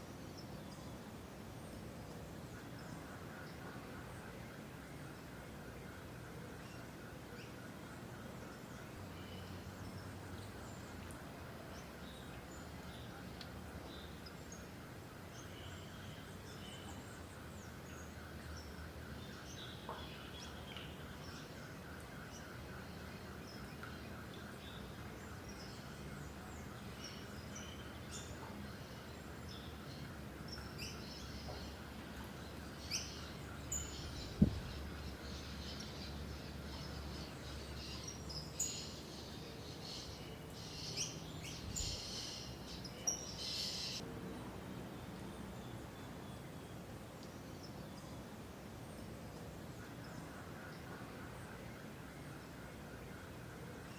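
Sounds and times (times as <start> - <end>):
background hiss: 0.0 - 53.9
small birds chirping: 30.6 - 44.0.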